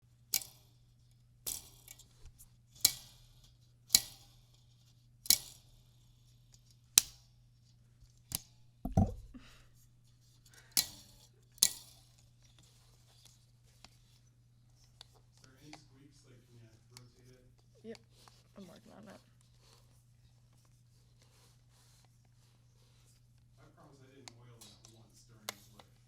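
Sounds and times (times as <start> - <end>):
dull knock: 8.9 - 9.4.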